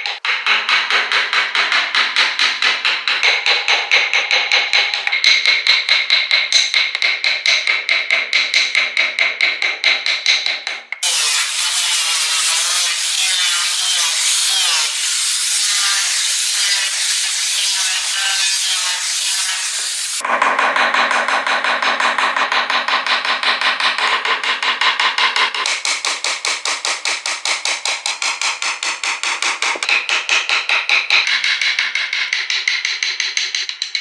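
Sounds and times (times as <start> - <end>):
woodworking tool hissing: 11.0 - 20.2.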